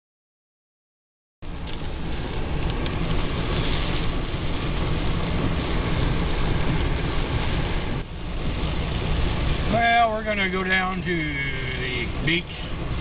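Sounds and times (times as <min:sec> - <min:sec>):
vehicle cabin road rumble: 0:01.4 - 0:13.0.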